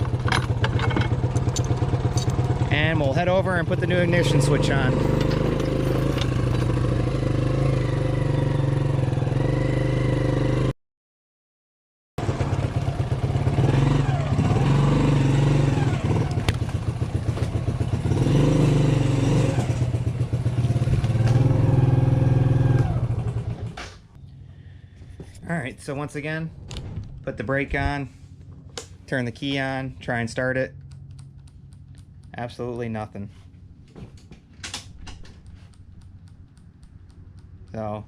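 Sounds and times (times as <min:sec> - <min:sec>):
small four-stroke engine running: 0:00.0 - 0:10.7, 0:12.2 - 0:23.8.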